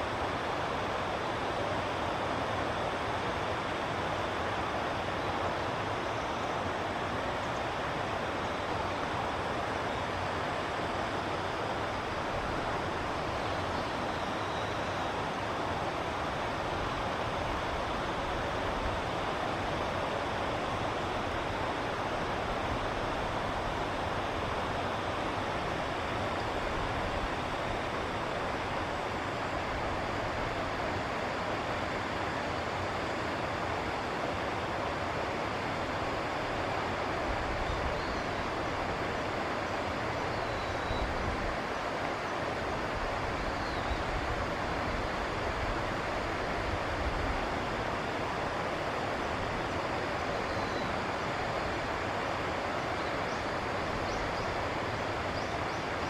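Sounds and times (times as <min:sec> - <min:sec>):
river water rushing: 0:00.0 - 0:56.0
faint bird chirps: 0:13.8 - 0:15.1, 0:40.3 - 0:41.2, 0:43.4 - 0:44.2, 0:50.4 - 0:51.0.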